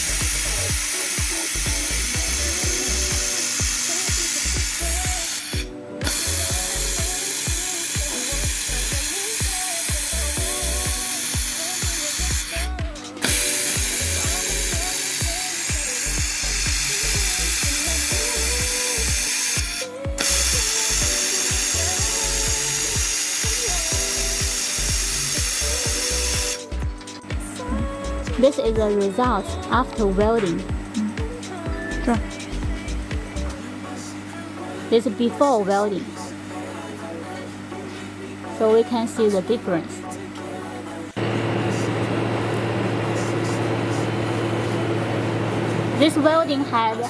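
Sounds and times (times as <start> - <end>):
laser welder hissing: 0.0 - 26.8
background music: 0.0 - 47.0.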